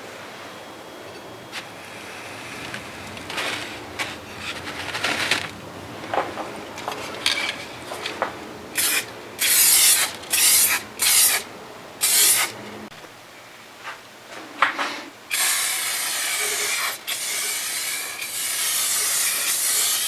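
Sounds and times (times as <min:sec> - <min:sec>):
scraping metal parts clean: 0:01.6 - 0:11.4, 0:15.3 - 0:20.0
hissing spray bursts: 0:08.8 - 0:12.6, 0:15.3 - 0:20.0.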